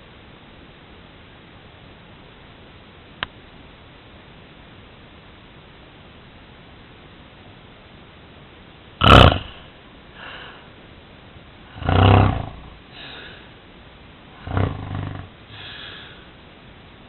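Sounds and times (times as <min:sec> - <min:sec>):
snort: 0:09.0 - 0:09.6, 0:11.7 - 0:13.4, 0:14.4 - 0:16.2
faint breathing: 0:10.1 - 0:10.8, 0:11.7 - 0:13.6, 0:14.4 - 0:16.4
person snoring: 0:14.4 - 0:16.0.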